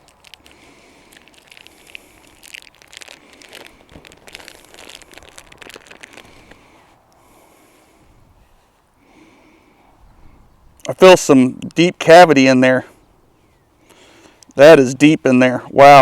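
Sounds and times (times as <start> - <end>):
plastic wrapping crinkling: 0.0 - 6.8.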